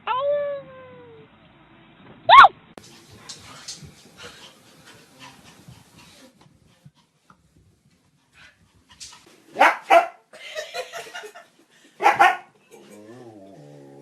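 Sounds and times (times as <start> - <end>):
dog barking: 9.6 - 10.2, 12.0 - 12.5.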